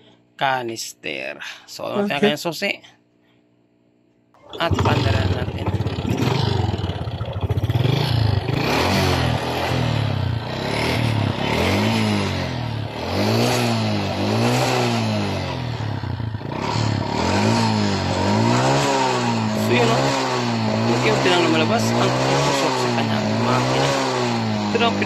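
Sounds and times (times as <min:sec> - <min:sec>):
engine mechanical clatter: 0:04.4 - 0:12.1
motorcycle engine revving: 0:04.4 - 0:25.0.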